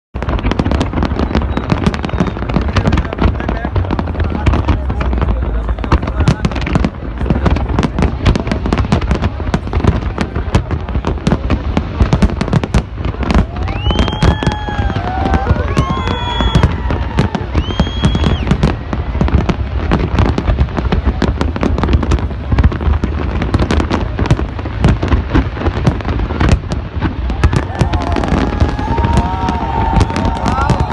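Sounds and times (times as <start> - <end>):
high firework whistles: 0.2 - 3.1, 13.3 - 20.4, 27.2 - 30.9
firecrackers banging: 0.2 - 30.9.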